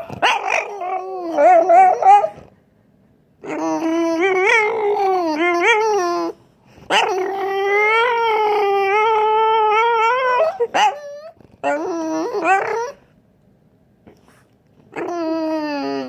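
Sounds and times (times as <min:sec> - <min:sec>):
dog whining howls: 0:00.0 - 0:02.5, 0:03.4 - 0:13.0, 0:14.9 - 0:16.0
dog yelp: 0:00.0 - 0:02.5, 0:03.4 - 0:13.0.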